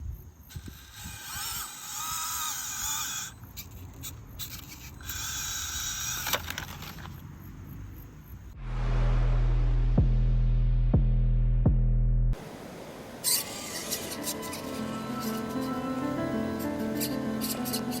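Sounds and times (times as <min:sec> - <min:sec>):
rc car electric motor whining: 0:00.4 - 0:07.2, 0:13.2 - 0:16.0
low rumbling noise: 0:08.6 - 0:13.2.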